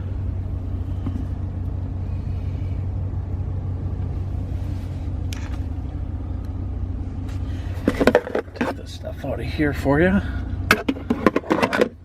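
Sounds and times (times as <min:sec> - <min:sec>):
car engine idling: 0:00.0 - 0:12.0
faint rustle: 0:00.8 - 0:06.6.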